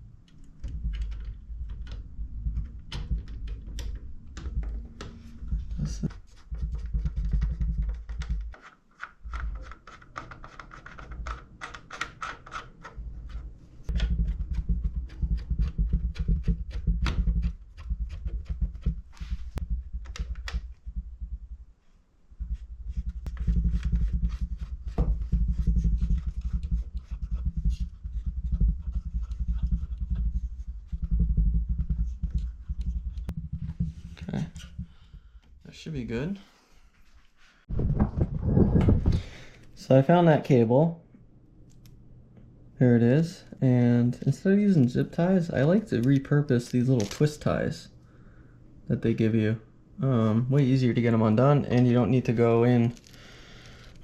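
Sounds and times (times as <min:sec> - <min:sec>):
low handling rumble: 0:00.0 - 0:06.1.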